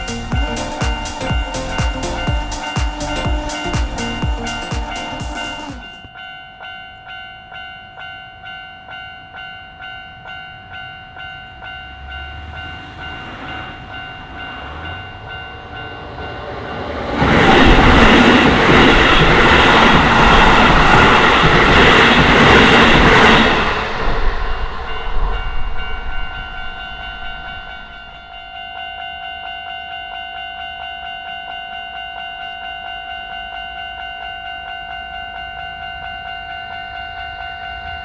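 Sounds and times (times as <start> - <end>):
electric train passing: 0.0 - 6.4, 7.1 - 38.0
level crossing bell ringing: 0.0 - 12.7.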